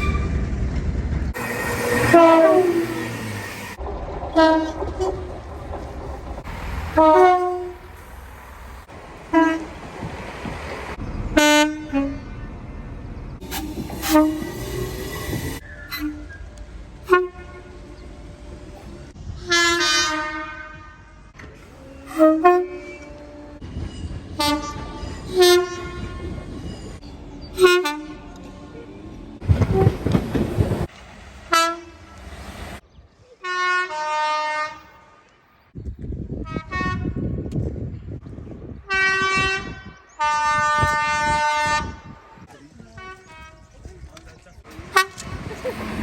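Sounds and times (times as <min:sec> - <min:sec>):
loud rushing noise: 0:01.2 - 0:04.3
train horn blasts: 0:01.4 - 0:03.8, 0:06.6 - 0:08.0, 0:09.3 - 0:09.9, 0:11.4 - 0:12.4, 0:13.4 - 0:18.0, 0:19.4 - 0:23.7, 0:24.3 - 0:26.5, 0:27.6 - 0:28.4, 0:31.5 - 0:32.2, 0:33.4 - 0:35.3, 0:36.4 - 0:37.3, 0:38.8 - 0:42.4, 0:43.0 - 0:43.7, 0:44.8 - 0:45.5.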